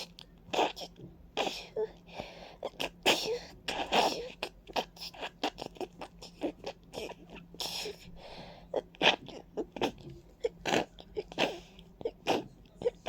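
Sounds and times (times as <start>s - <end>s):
person sniffling with congested nose: 7.6s - 9.2s.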